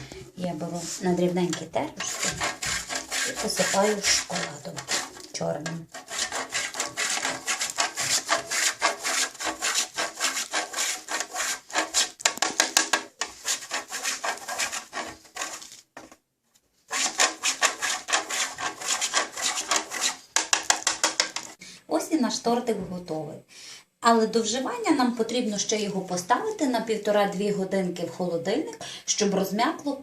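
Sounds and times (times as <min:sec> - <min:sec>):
chocolate scraping on a grater: 0:00.6 - 0:12.2, 0:13.2 - 0:15.8, 0:16.9 - 0:21.5.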